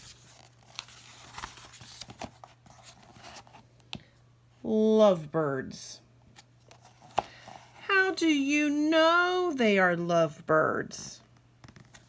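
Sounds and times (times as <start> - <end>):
paper rustling: 0.0 - 3.6.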